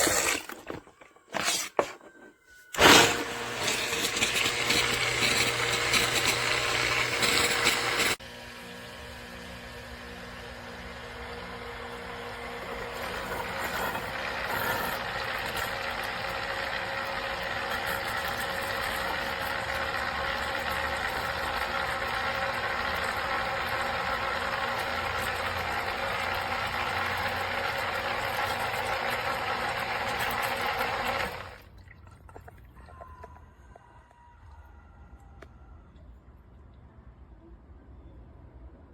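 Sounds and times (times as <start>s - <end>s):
sump pump running: 2.7s - 33.3s.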